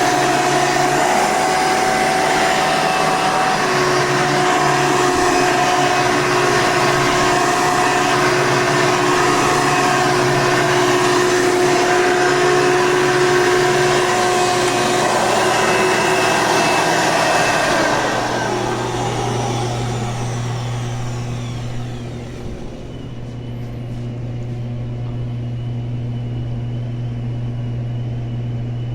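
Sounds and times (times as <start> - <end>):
vacuum cleaner motor running: 0.0 - 28.8
low hum: 16.4 - 28.9.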